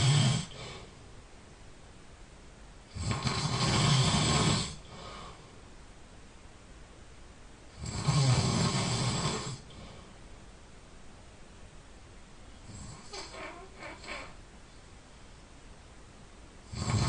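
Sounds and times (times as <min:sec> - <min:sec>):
person snoring: 0:00.0 - 0:00.9, 0:02.9 - 0:05.4, 0:07.8 - 0:09.9, 0:12.6 - 0:14.4, 0:16.7 - 0:17.0.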